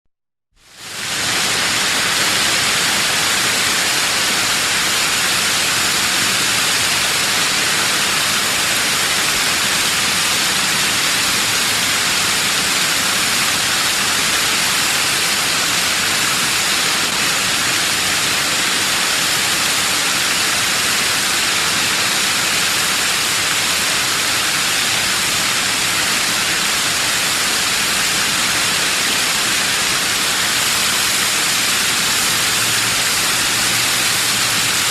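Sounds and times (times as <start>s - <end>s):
waterfall hiss: 0.6s - 34.9s.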